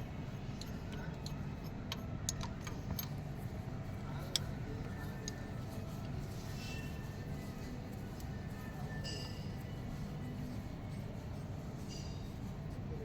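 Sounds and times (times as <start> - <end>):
tools clicking against metal: 0.5 - 3.2.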